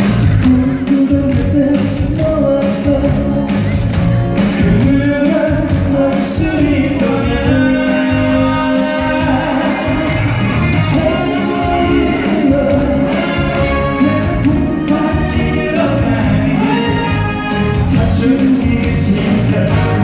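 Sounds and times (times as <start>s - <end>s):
live pop song with band: 0.0s - 20.0s
person singing lead: 0.2s - 20.0s.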